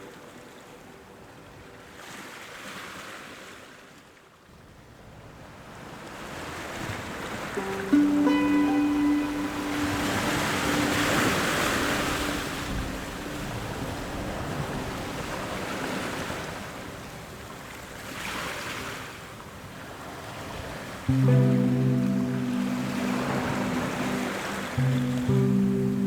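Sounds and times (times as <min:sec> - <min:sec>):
faint sustained music tones: 0:00.0 - 0:02.1, 0:07.6 - 0:15.4, 0:21.1 - 0:26.0.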